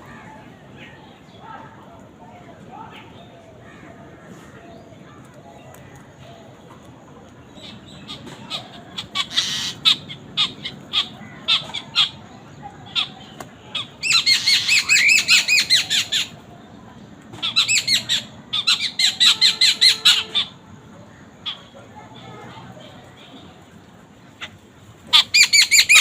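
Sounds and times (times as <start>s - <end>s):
birds squawking: 7.6s - 12.3s, 12.9s - 16.5s, 17.4s - 21.8s, 24.3s - 26.0s.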